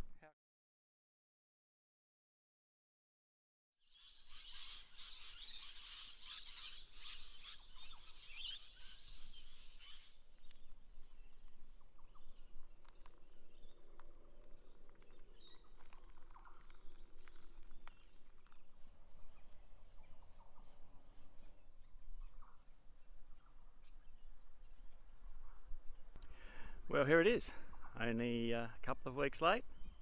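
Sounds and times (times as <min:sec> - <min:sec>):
birds chirping: 0:03.9 - 0:24.9.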